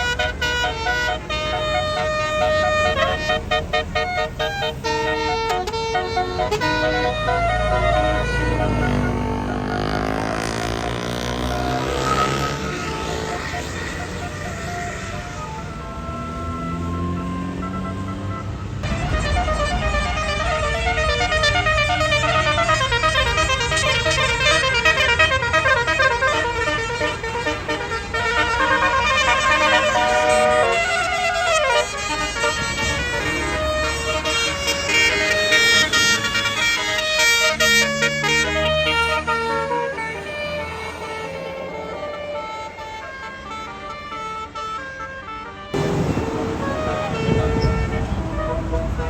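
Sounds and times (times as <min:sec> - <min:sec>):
bus horn playing a melody: 0:00.0 - 0:49.0
low engine rumble: 0:45.8 - 0:49.0.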